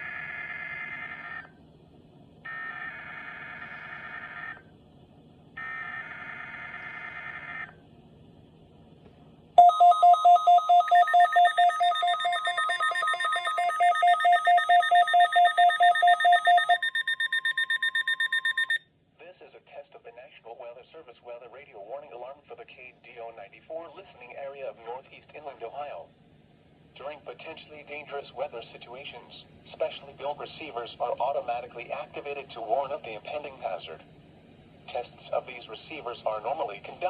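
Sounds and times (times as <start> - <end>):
fast-pulsing alarm beep: 9.6 - 18.8
warbling digital data bursts: 9.6 - 18.8.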